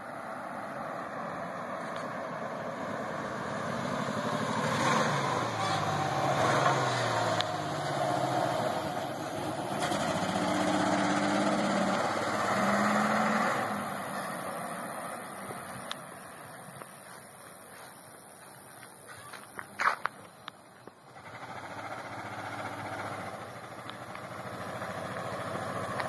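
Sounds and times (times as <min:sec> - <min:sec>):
truck engine at full throttle: 0:01.4 - 0:17.2, 0:21.0 - 0:26.0.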